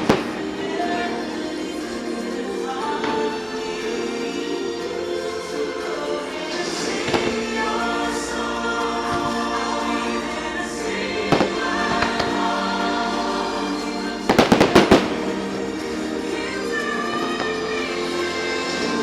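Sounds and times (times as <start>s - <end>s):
choir singing held chords: 0.0s - 19.0s
orchestral music: 0.0s - 19.0s
firework bangs: 14.3s - 15.4s
firework crack: 14.3s - 15.4s.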